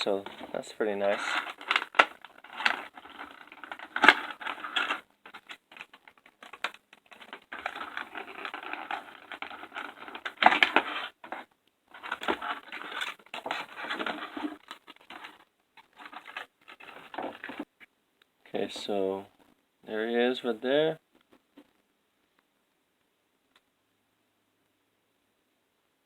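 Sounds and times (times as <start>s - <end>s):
plastic packaging rustling: 0.0s - 17.9s.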